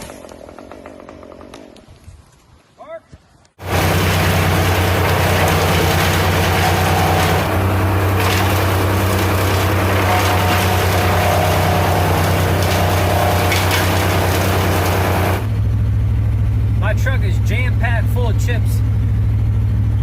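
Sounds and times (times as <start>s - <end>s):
branches being shredded: 3.6s - 15.5s
chipper engine drone: 3.6s - 20.0s.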